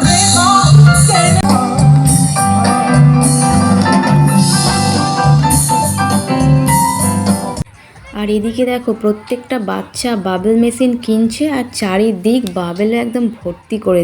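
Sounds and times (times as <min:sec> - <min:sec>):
person singing: 0:00.0 - 0:02.9
live band playing: 0:00.0 - 0:08.6.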